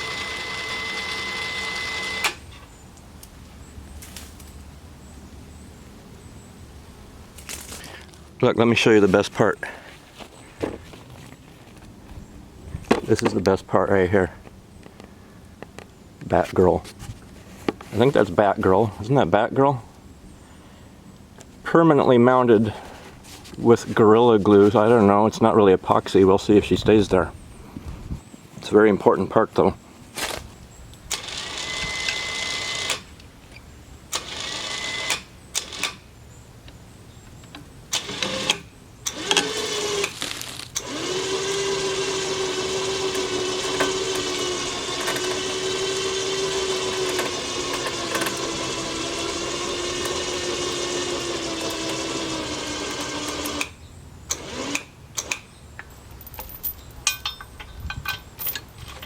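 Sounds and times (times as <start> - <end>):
electric winch motor humming: 0.0 - 2.6, 31.1 - 33.1, 34.1 - 36.0, 37.9 - 55.4.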